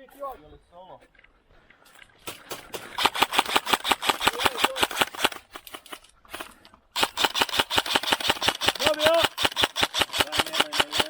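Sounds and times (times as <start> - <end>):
airsoft guns firing full auto: 2.3 - 11.0.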